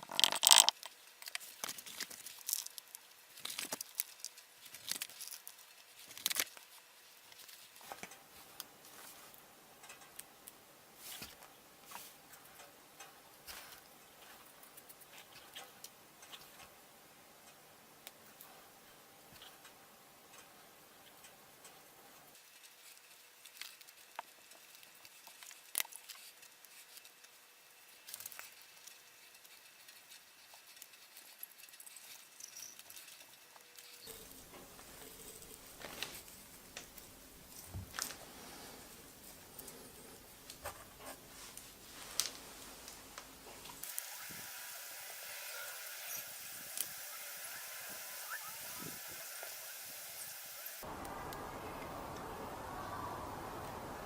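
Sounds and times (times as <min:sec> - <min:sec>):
small tools tapping and clicking: 0:00.0 - 0:02.8
faint steady hum: 0:03.9 - 0:22.4, 0:26.5 - 0:54.0.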